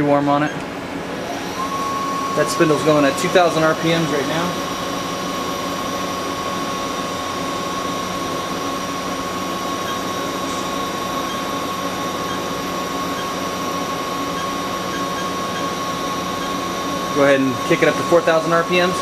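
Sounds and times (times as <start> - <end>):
machine spindle hum and whine: 0.0 - 19.0.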